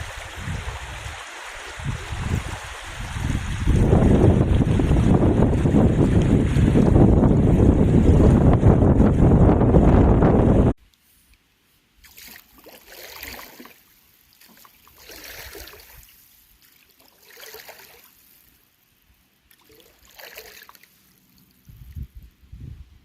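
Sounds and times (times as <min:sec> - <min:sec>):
kayak paddle splashing: 0:00.0 - 0:08.5, 0:12.0 - 0:22.0.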